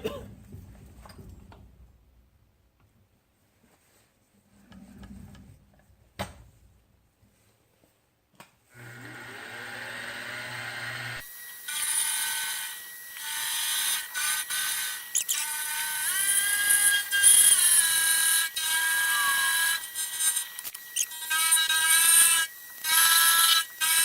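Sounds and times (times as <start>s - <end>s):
milling machine squealing while cutting: 11.3s - 24.0s.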